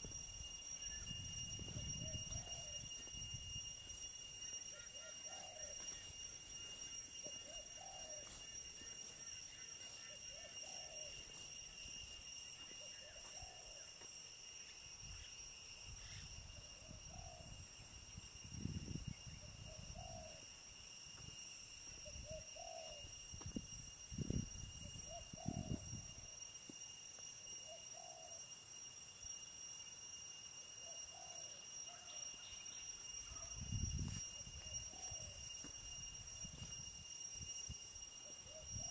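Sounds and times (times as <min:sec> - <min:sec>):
steady high-pitched whine: 0:00.0 - 0:38.9
bird dove-like call: 0:02.0 - 0:02.8, 0:04.7 - 0:05.8, 0:07.4 - 0:08.4, 0:09.6 - 0:11.2, 0:12.8 - 0:13.9, 0:16.0 - 0:17.5, 0:19.3 - 0:20.4, 0:22.0 - 0:23.1, 0:25.0 - 0:26.2, 0:27.6 - 0:28.4, 0:34.9 - 0:35.4.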